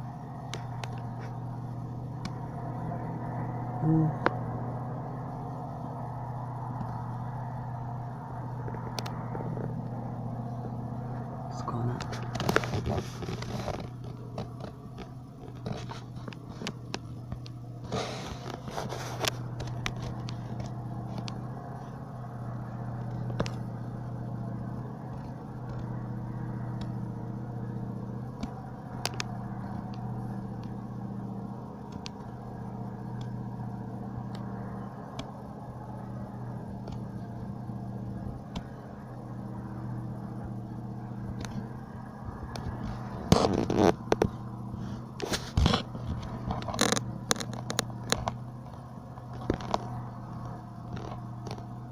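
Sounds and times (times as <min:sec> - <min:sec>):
low droning hum: 0:00.0 - 0:51.9
clicks scrapes and crackles: 0:12.0 - 0:21.4, 0:42.5 - 0:51.8.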